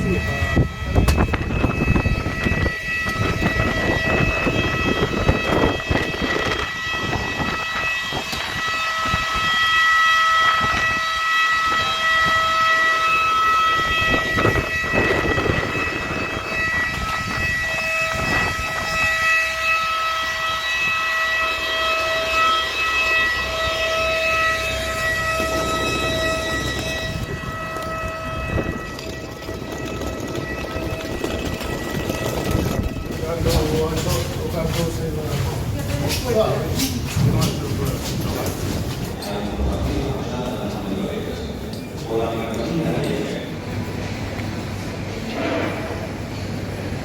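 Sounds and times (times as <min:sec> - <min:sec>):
airplane cabin rumble: 0:00.0 - 0:08.6, 0:24.8 - 0:47.0
airplane cabin whine: 0:00.0 - 0:47.0.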